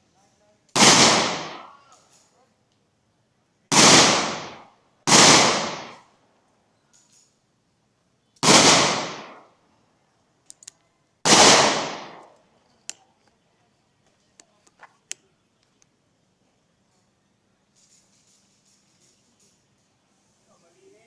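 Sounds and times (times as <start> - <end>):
gunshots echoing: 0.8 - 1.8, 3.7 - 6.0, 8.4 - 9.5, 11.2 - 12.3
faint clicks and ticks: 10.4 - 10.9.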